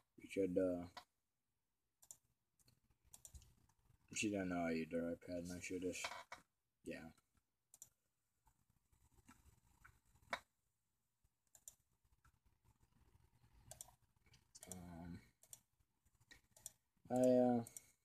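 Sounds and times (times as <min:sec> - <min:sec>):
faint clicks: 0:02.0 - 0:03.8, 0:11.5 - 0:12.4, 0:13.6 - 0:15.6.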